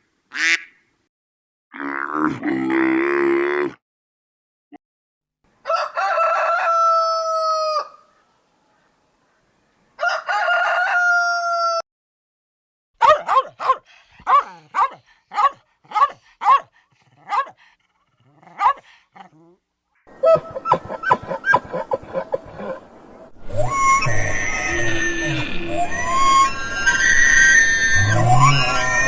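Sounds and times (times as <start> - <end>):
rooster crowing: 5.6 - 8.1, 10.0 - 11.8
dog barking: 13.0 - 17.6, 18.3 - 19.3.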